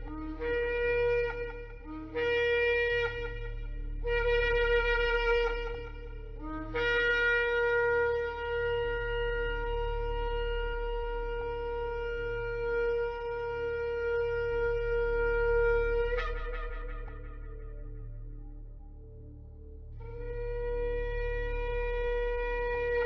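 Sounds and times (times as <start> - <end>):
shofar blasts: 0.0 - 18.3.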